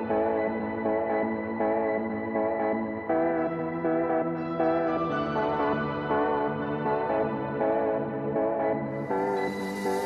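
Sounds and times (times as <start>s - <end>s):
ambient synthesizer music: 8.0s - 10.0s.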